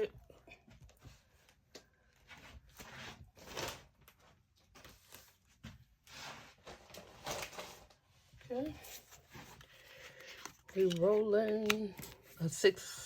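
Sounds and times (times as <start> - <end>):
paper or plastic rustling: 2.3 - 8.2.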